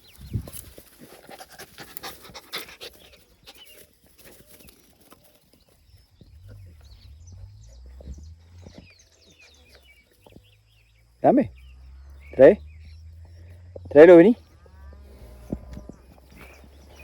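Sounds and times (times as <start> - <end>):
small birds chirping: 0.0 - 17.0
dog panting: 1.0 - 4.0.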